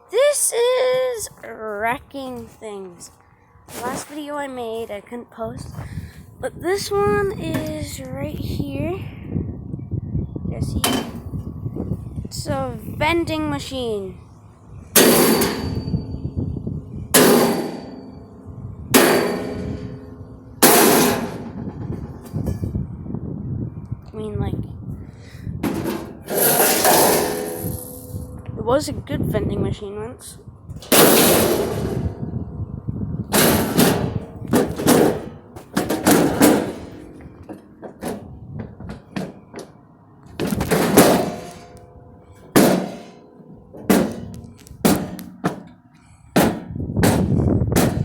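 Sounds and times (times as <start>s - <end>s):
sledgehammer clanging on metal: 10.8s - 11.3s, 15.0s - 22.7s, 25.6s - 28.4s, 30.8s - 32.2s, 33.3s - 39.8s, 40.4s - 45.8s, 46.4s - 48.0s.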